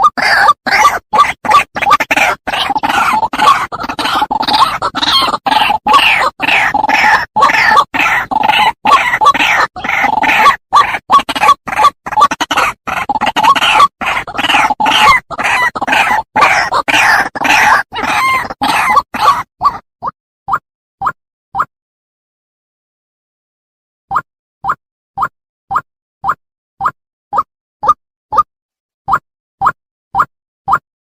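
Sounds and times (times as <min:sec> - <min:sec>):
bird harsh croaking calls: 0:00.0 - 0:19.8.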